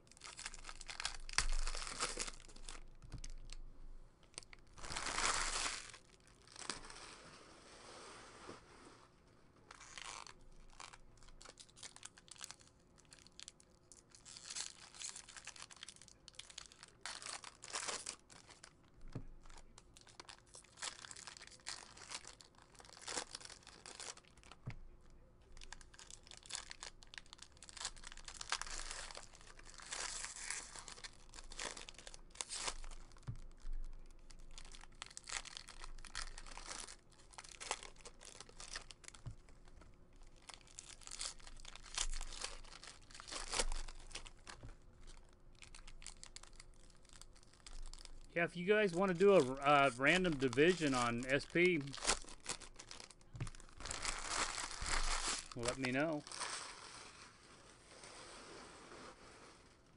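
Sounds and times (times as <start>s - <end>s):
card pack wrappers crinkling: 0.0s - 3.6s, 4.3s - 7.0s, 9.7s - 56.9s.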